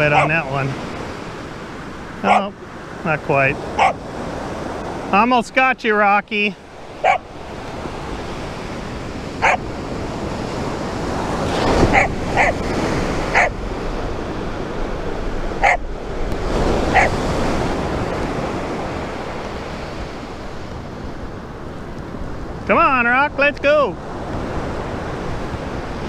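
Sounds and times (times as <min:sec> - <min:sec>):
dog barking: 0:00.0 - 0:00.6, 0:02.2 - 0:02.6, 0:03.8 - 0:04.0, 0:07.0 - 0:07.3, 0:09.4 - 0:09.6, 0:11.8 - 0:12.6, 0:13.2 - 0:13.6, 0:15.6 - 0:15.8, 0:16.9 - 0:17.2
ocean surf washing up beach: 0:00.0 - 0:26.0.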